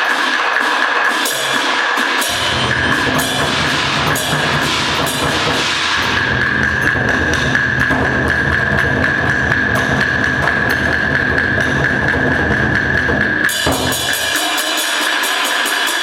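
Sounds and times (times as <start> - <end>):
dry clacking percussion: 0.0 - 16.0
deep drum beats: 2.2 - 14.4.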